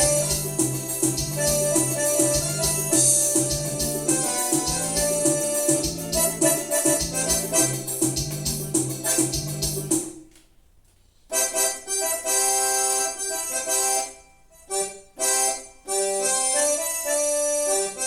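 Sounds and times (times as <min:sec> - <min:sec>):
keyboard chords and melody: 0:00.0 - 0:10.1, 0:11.3 - 0:18.0
keyboard rhythmic accompaniment: 0:00.0 - 0:10.4, 0:11.3 - 0:18.0.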